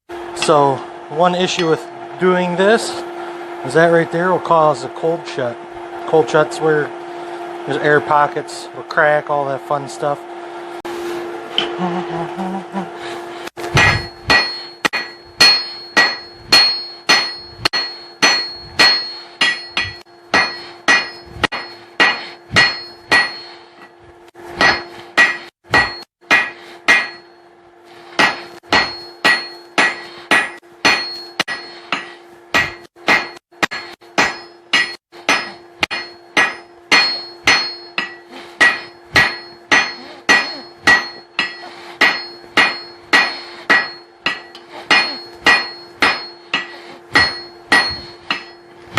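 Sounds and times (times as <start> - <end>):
hammer striking steel on anvil: 0.4 - 3.0, 11.6 - 11.8, 13.6 - 27.5, 28.1 - 48.9.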